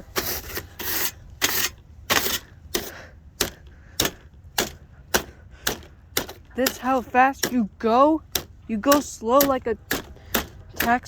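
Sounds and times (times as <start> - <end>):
brushing on plastic fan: 0.0 - 3.6.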